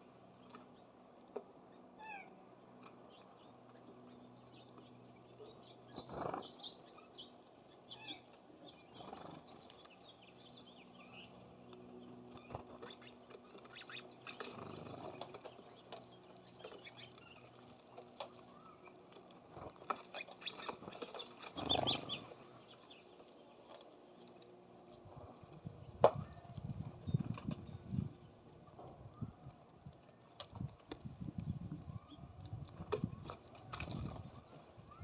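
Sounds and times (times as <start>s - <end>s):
small songbirds chirping: 1.7s - 25.0s.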